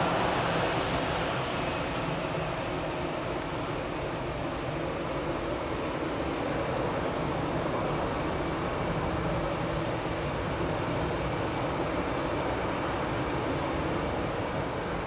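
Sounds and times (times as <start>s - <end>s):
jet engines running: 0.0s - 5.1s.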